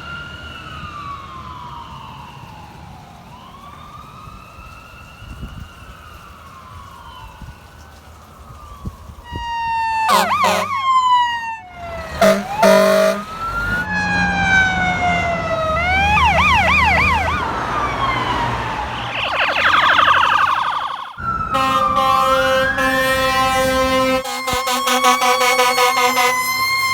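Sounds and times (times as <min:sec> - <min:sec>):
fire engine siren wailing and yelping: 0:00.0 - 0:26.9
air horn blasts: 0:10.1 - 0:10.8, 0:12.2 - 0:13.4, 0:21.5 - 0:26.6.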